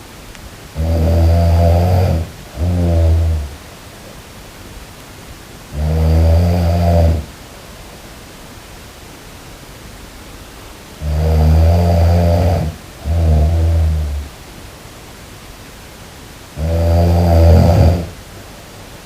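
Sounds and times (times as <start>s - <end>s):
steady background hiss: 0.0s - 19.0s
person snoring: 0.8s - 3.6s, 5.7s - 7.3s, 11.0s - 14.3s, 16.6s - 18.2s.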